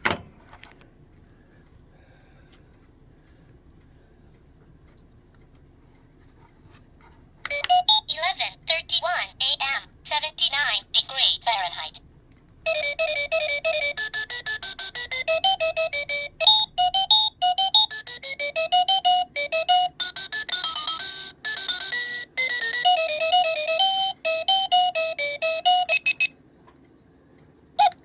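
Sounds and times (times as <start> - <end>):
alarm clock beeping tune: 7.5 - 12.0, 12.7 - 26.3.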